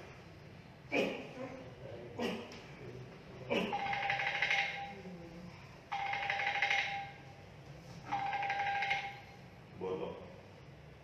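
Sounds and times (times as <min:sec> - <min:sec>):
phone ringing: 0:03.7 - 0:05.0, 0:05.9 - 0:07.3, 0:08.1 - 0:09.4.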